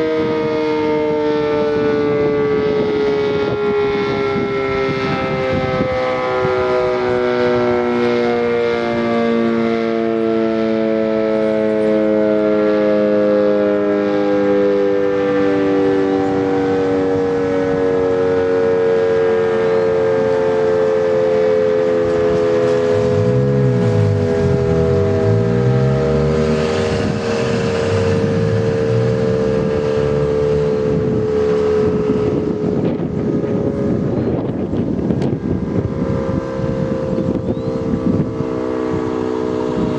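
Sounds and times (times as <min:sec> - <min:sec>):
warning siren winding down: 0:00.0 - 0:39.9
vehicle passing: 0:22.0 - 0:39.9.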